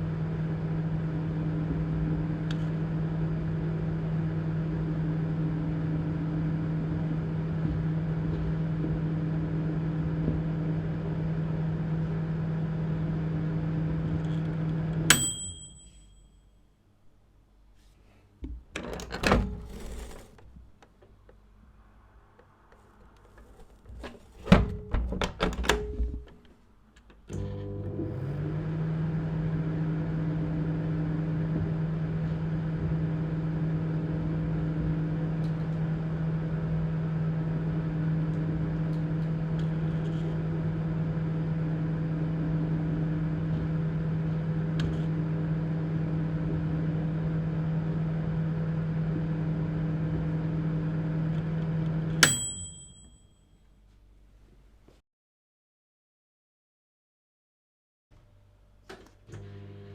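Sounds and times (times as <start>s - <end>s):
microwave oven humming: 0.0s - 16.4s, 27.3s - 53.4s, 59.2s - 59.9s
microwave ding: 15.1s - 16.5s, 52.2s - 53.6s
microwave click: 52.2s - 53.1s.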